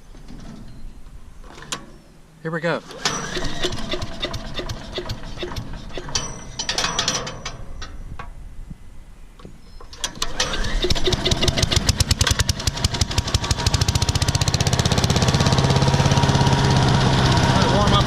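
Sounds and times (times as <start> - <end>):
engine pull-started: 2.8 - 7.6, 9.9 - 18.0
engine running fast: 10.5 - 18.0.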